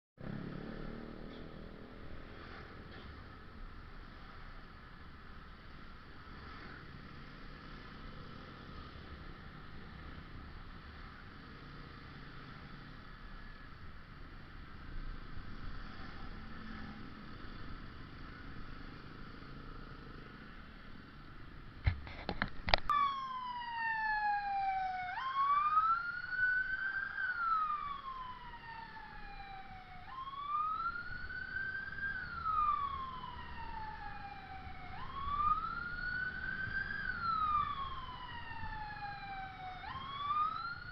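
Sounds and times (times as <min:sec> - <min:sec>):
road traffic noise: 0:00.2 - 0:40.9
ambulance siren wailing: 0:22.8 - 0:40.9.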